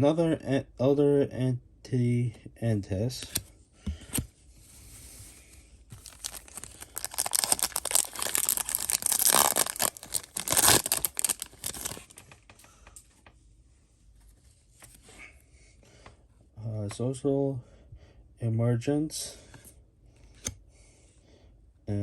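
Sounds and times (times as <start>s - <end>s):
foil wrapper tearing and crinkling: 5.9s - 12.2s.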